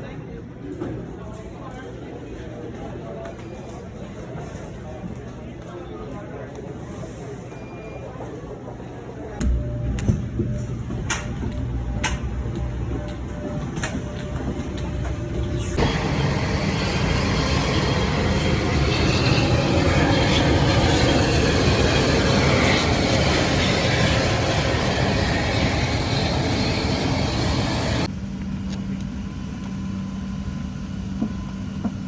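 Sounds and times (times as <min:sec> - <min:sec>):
steady hum: 0:09.4 - 0:28.1.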